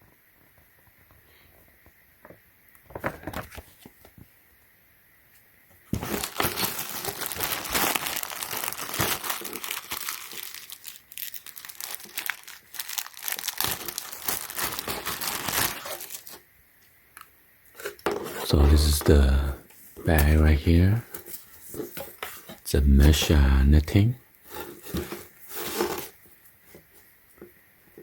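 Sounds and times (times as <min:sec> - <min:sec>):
plastic packaging crinkling: 0:05.9 - 0:16.4, 0:24.5 - 0:26.2.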